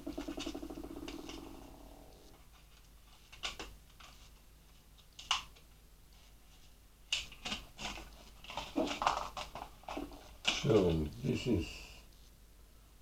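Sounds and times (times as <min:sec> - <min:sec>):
plastic packaging clicks and rattles: 0:07.1 - 0:10.9.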